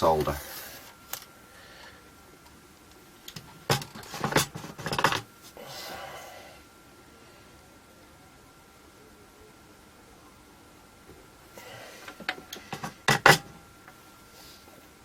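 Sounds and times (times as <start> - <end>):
soft hiss: 5.3 - 15.0.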